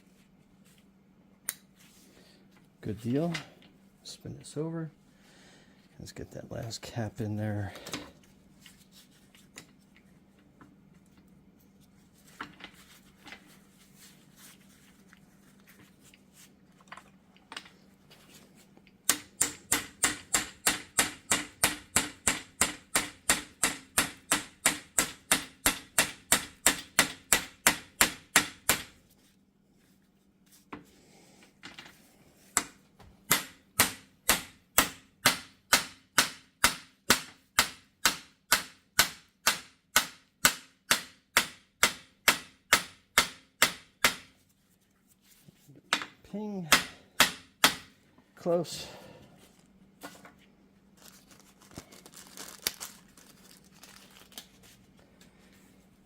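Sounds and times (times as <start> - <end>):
hammer tapping metal: 19.1 - 28.9.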